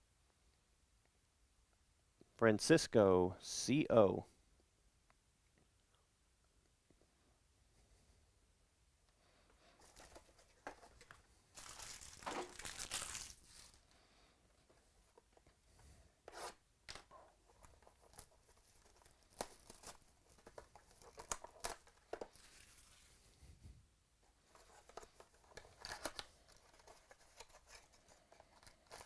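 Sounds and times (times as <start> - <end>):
wrapping torn and crinkled: 11.5 - 13.8, 17.6 - 23.1, 25.5 - 29.0.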